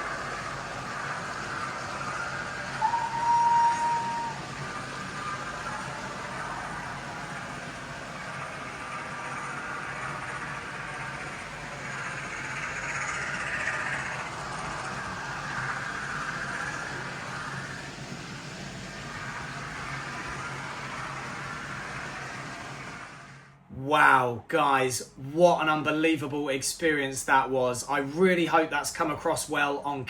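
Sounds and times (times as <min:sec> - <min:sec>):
model train motor hum: 0:00.0 - 0:23.5.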